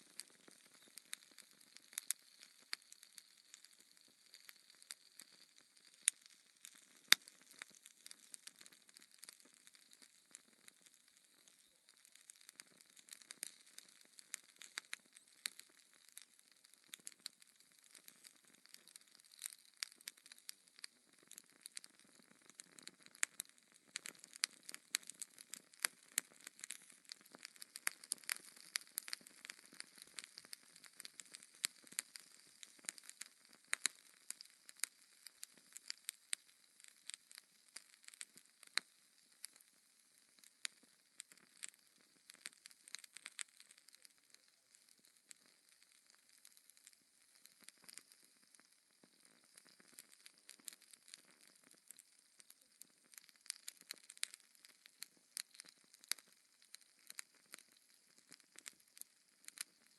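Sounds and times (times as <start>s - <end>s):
soft fire hiss: 0.0s - 16.3s, 23.3s - 58.2s
fire pops and snaps: 0.0s - 59.9s
logs crackling in fireplace: 0.0s - 59.9s.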